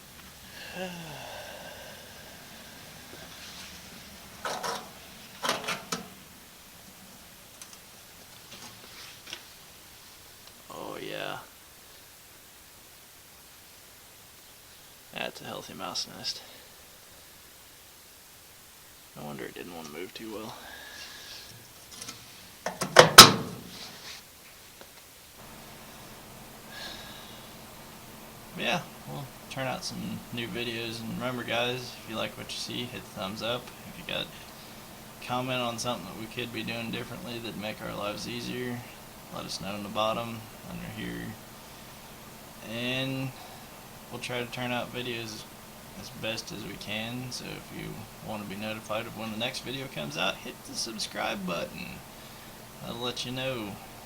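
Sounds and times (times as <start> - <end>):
faint background hiss: 0.0 - 54.0
clattering metal knocks: 4.4 - 6.2, 22.7 - 23.8.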